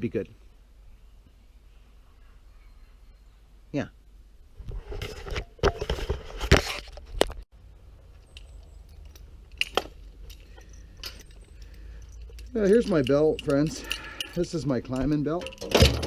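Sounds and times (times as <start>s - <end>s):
metal climbing hardware clinking: 8.1s - 16.0s.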